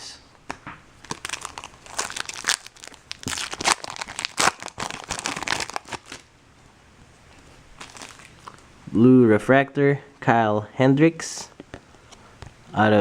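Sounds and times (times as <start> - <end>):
foil wrapper crinkling: 1.0 - 6.3, 7.8 - 8.6.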